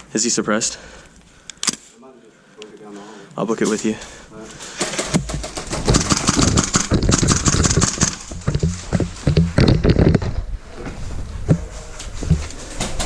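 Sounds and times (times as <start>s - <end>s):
fast running footsteps: 4.8s - 10.4s, 11.0s - 13.0s
gear clattering: 5.0s - 10.4s.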